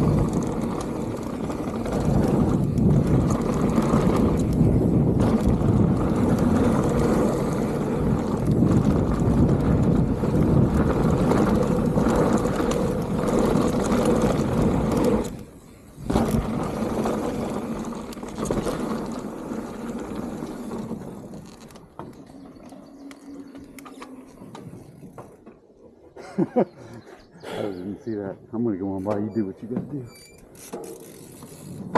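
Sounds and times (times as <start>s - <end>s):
wind rushing over microphone: 0.0s - 21.3s
bike tyres rolling on dirt: 0.0s - 26.7s, 29.9s - 31.9s
small clicks: 21.4s - 25.6s.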